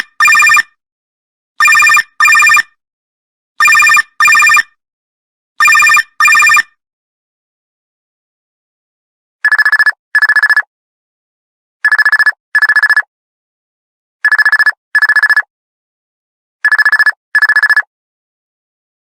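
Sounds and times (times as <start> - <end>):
phone ringtone trill: 0.0 - 0.7, 1.6 - 2.7, 3.6 - 4.7, 5.6 - 6.7.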